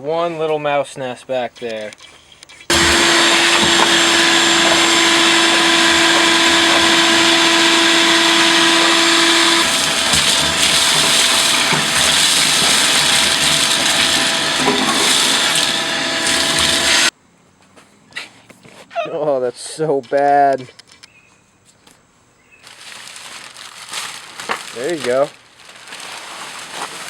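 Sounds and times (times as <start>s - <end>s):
vacuum cleaner running: 2.7s - 17.1s.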